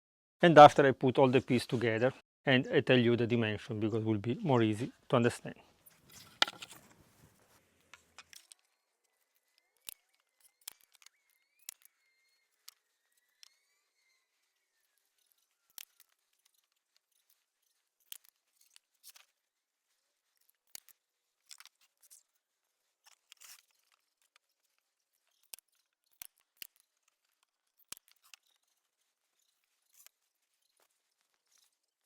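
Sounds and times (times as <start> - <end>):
wood pieces clicking and knocking: 6.1 - 6.9.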